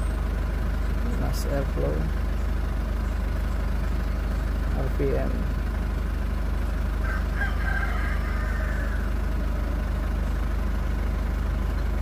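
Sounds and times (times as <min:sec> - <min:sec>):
diesel engine idling: 0:00.0 - 0:12.0
rooster crowing: 0:07.0 - 0:09.9.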